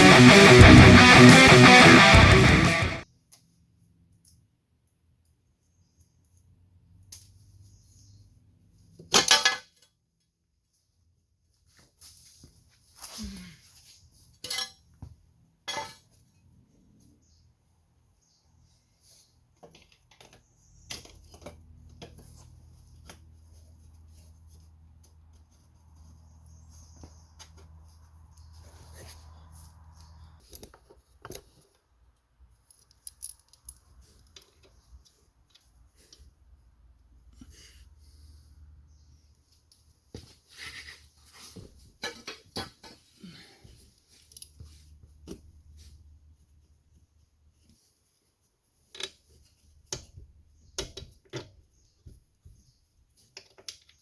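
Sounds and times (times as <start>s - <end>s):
clicks and taps of metal parts: 53.3s - 54.0s.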